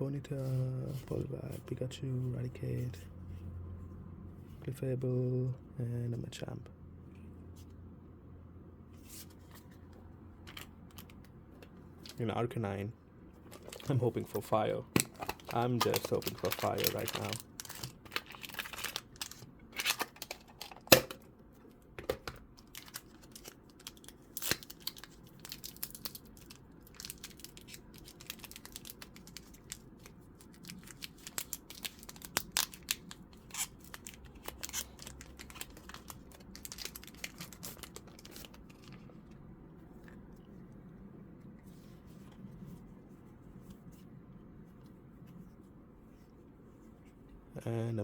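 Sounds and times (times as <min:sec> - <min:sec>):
cards and foil pack crinkling: 0:13.4 - 0:21.1, 0:22.6 - 0:39.1.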